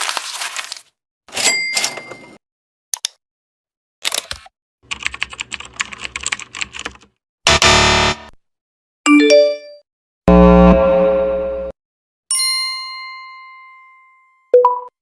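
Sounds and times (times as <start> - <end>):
rapid clicks like typing: 4.9 - 7.1
loud low pitched sound: 10.3 - 11.7.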